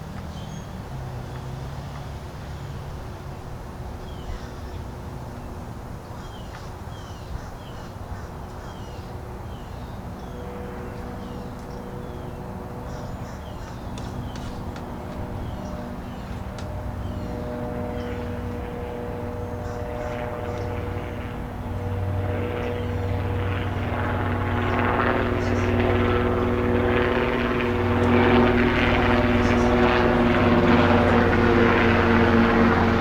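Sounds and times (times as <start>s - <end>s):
propeller airplane drone: 0.0s - 33.0s
bird calling: 12.9s - 17.4s.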